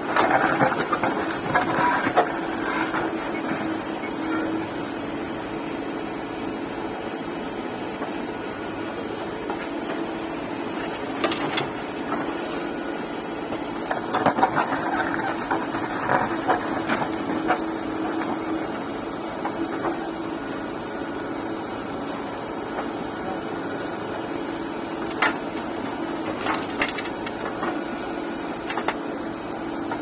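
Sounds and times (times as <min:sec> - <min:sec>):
diesel engine running: 0:00.0 - 0:30.0
knocks and clatter: 0:25.1 - 0:27.8.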